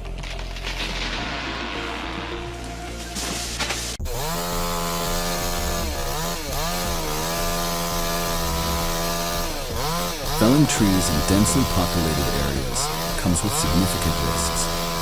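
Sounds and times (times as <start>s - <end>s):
chainsaw at high revs: 4.0s - 15.0s.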